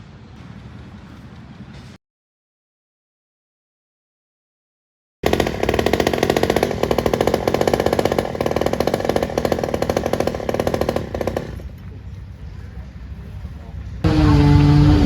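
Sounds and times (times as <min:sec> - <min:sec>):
engine running: 0:05.3 - 0:15.0.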